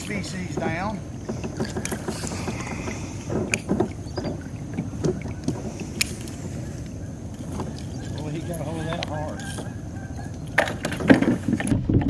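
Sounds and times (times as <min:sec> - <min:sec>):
sharp clicks and knocks: 0:00.0 - 0:06.4
wind and water rumbling: 0:00.0 - 0:12.0.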